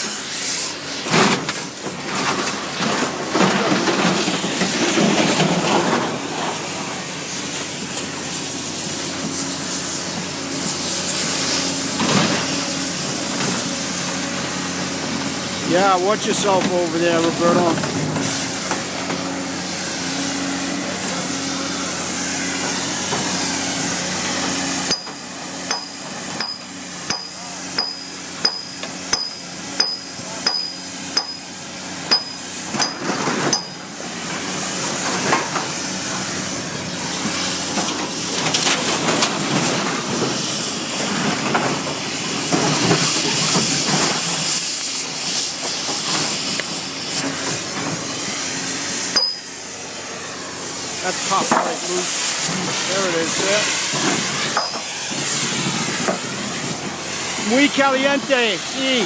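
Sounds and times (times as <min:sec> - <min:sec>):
cutting torch hissing: 0:00.0 - 0:59.0
hammer ringing on steel: 0:26.4 - 0:31.4.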